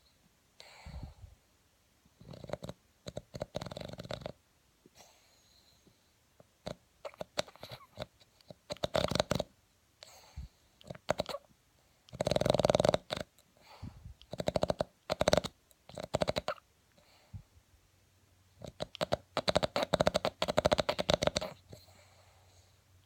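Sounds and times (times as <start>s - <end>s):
dog snoring: 2.2s - 4.4s, 6.6s - 11.4s, 12.1s - 17.3s, 18.6s - 22.7s.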